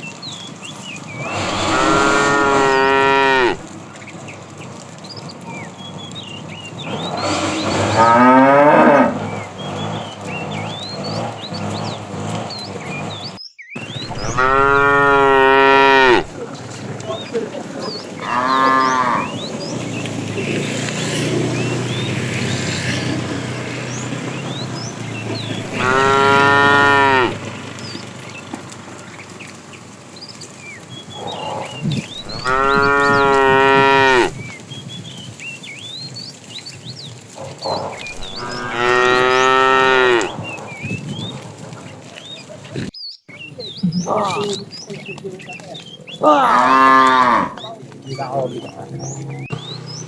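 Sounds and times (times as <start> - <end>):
cattle mooing: 1.2 - 3.7, 6.8 - 13.1, 13.9 - 16.4, 18.2 - 20.5, 25.3 - 27.4, 31.2 - 34.4, 37.4 - 40.7, 46.2 - 47.7.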